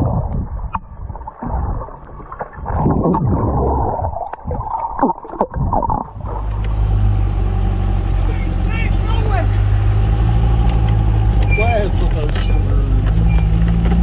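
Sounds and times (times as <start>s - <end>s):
muffled water sloshing: 0.0s - 14.0s
vehicle engine droning: 6.1s - 14.0s.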